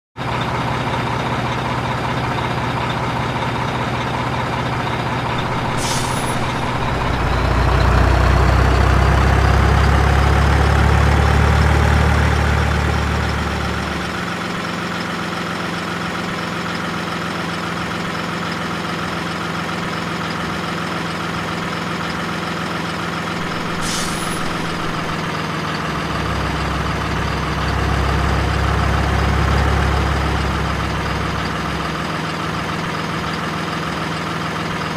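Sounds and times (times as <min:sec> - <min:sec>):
diesel truck engine running: 0:00.2 - 0:34.9
air hisses: 0:05.4 - 0:07.6, 0:23.4 - 0:25.2.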